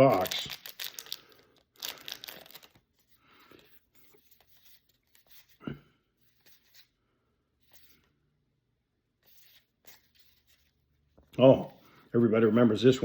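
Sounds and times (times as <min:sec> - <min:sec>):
cards rustling: 0:00.0 - 0:05.6, 0:06.2 - 0:06.9, 0:07.6 - 0:08.1, 0:09.2 - 0:12.0.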